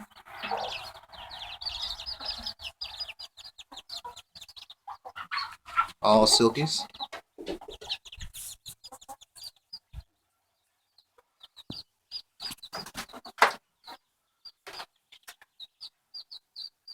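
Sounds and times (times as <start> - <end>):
hens clucking: 0.0 - 16.5
chicks peeping: 0.0 - 16.9.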